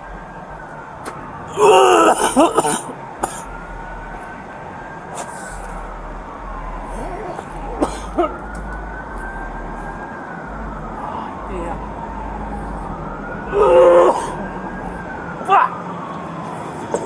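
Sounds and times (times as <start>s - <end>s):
faint siren wailing: 0.0s - 17.0s
man groaning in pain: 1.5s - 2.9s, 13.5s - 14.4s.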